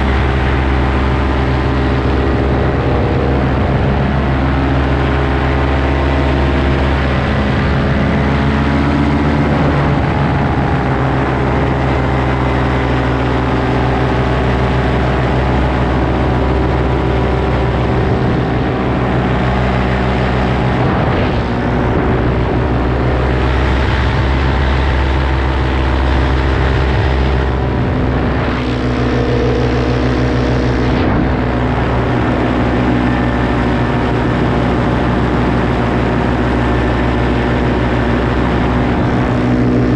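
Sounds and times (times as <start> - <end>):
paramotor engine drone: 0.0 - 39.9.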